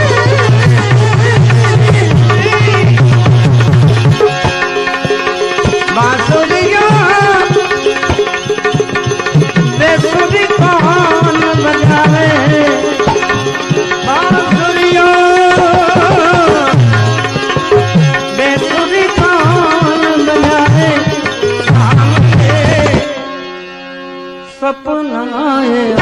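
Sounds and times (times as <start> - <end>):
tabla rhythm: 0.0 - 26.0.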